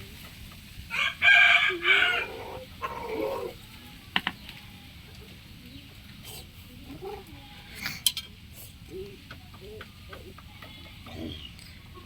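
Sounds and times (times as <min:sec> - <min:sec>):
rooster crowing: 0:00.9 - 0:03.5.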